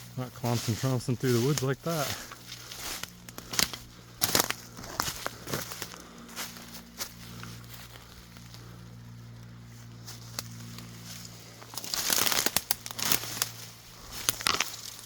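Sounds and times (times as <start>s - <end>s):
faint low hum: 0.0s - 15.0s
footsteps crunching through dry brush: 0.0s - 15.0s
twigs snapping: 1.3s - 6.2s, 10.1s - 15.0s.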